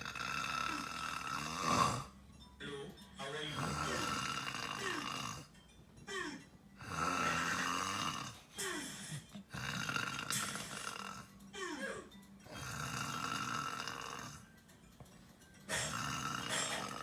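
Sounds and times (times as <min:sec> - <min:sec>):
man snoring loudly: 0:00.0 - 0:02.2, 0:03.5 - 0:05.6, 0:06.8 - 0:08.5, 0:09.5 - 0:11.4, 0:12.5 - 0:14.5, 0:15.7 - 0:17.0.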